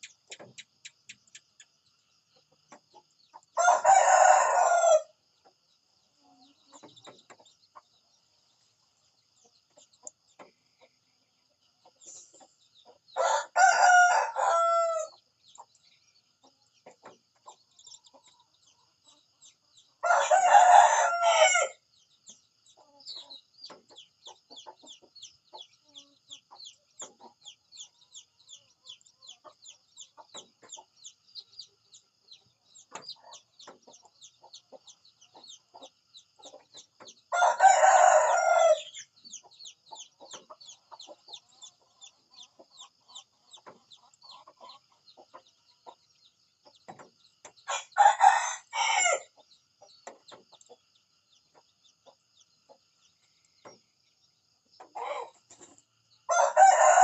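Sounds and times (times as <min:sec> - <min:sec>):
faint high-pitched chirping: 0:00.0 - 0:57.0
rooster crowing: 0:03.6 - 0:05.2, 0:13.2 - 0:15.1, 0:20.0 - 0:21.8, 0:37.3 - 0:39.0, 0:47.7 - 0:49.3, 0:56.3 - 0:57.0.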